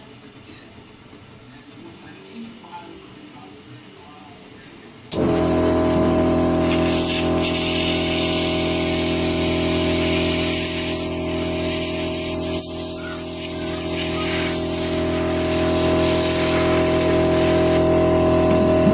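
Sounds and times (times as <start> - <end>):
motor hum: 5.1 - 18.9
loud hiss of rushing air: 5.4 - 18.9.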